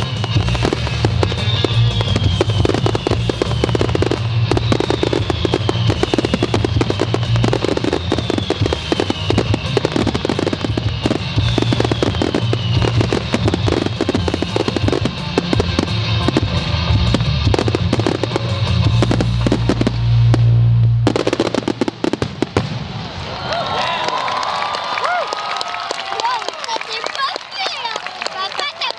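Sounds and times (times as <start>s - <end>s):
music: 0.0s - 22.2s
fireworks bangs and crackles: 0.0s - 25.2s.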